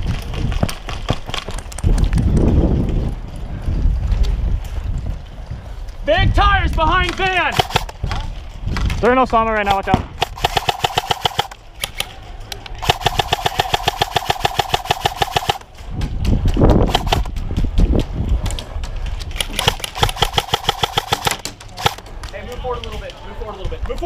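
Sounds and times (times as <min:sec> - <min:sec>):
airsoft gun firing bursts: 0:07.4 - 0:08.0, 0:10.0 - 0:12.1, 0:12.8 - 0:15.8, 0:16.8 - 0:17.4, 0:19.4 - 0:22.0.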